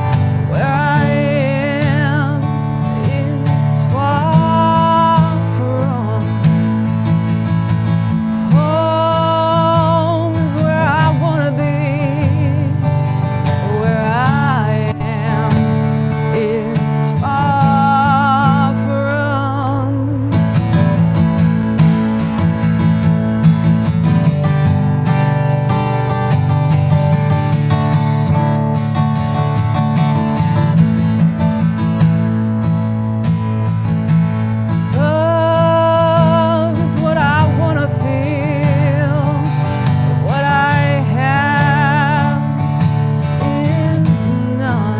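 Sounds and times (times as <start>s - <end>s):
woman singing with vibrato: 0.0s - 6.8s, 8.4s - 21.2s, 34.9s - 44.9s
strummed acoustic guitar: 0.0s - 44.9s.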